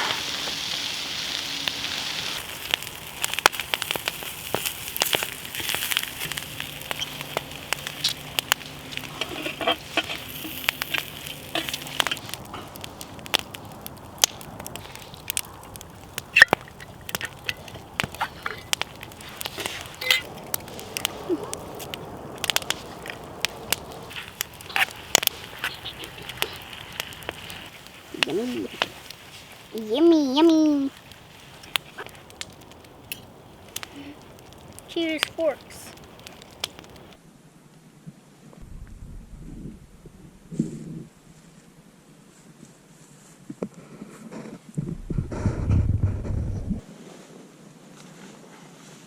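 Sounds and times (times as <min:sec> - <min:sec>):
campfire crackling and popping: 0:00.0 - 0:37.2
steady sizzle: 0:00.0 - 0:37.3.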